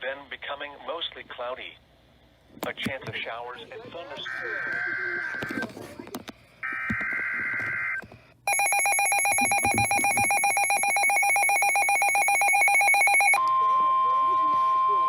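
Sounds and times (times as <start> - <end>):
rapid electronic trilling beep: 7.2 - 13.4.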